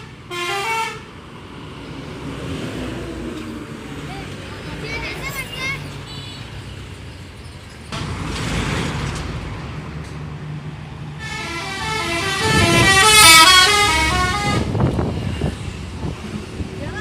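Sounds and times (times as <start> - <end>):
air horn playing a melody: 0.0 - 1.1, 11.2 - 14.8
bus engine and road noise: 0.0 - 17.0.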